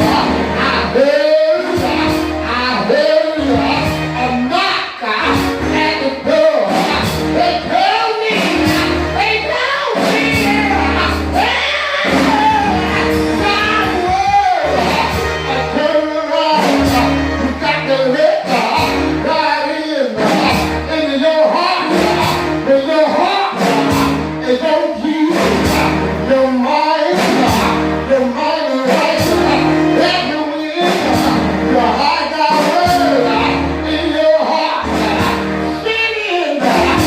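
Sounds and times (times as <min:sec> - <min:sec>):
bass line: 0:00.0 - 0:37.0
people singing: 0:00.0 - 0:37.0
steady drum beat: 0:01.7 - 0:02.5, 0:06.6 - 0:17.8, 0:20.2 - 0:20.9, 0:21.8 - 0:22.7, 0:23.6 - 0:24.4, 0:25.2 - 0:26.2, 0:27.2 - 0:28.0, 0:28.9 - 0:33.8, 0:34.9 - 0:35.6, 0:36.6 - 0:37.0.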